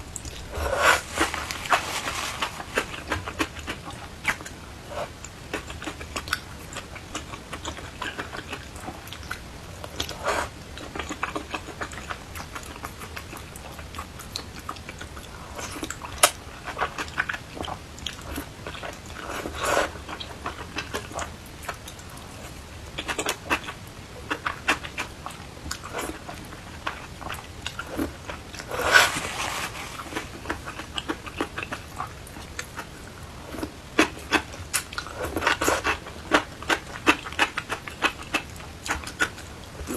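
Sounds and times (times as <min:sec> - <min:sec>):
person chewing and biting: 0:00.2 - 0:14.0, 0:23.0 - 0:39.9.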